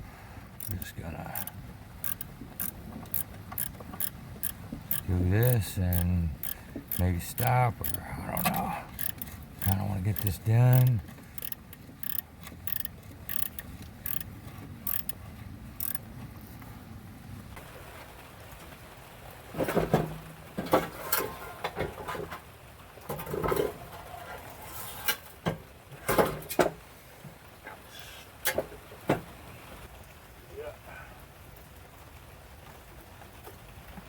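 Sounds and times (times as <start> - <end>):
hand tools clicking: 0.6 - 14.3, 14.9 - 15.2, 15.8 - 16.0.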